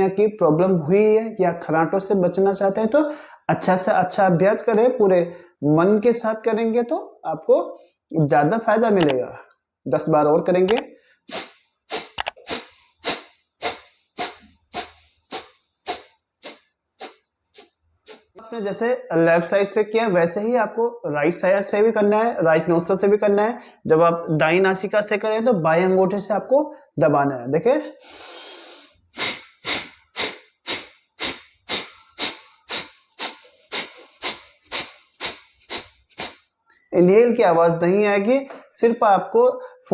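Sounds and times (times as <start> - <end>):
sharp nasal exhalations: 11.0 - 18.4, 28.0 - 36.9.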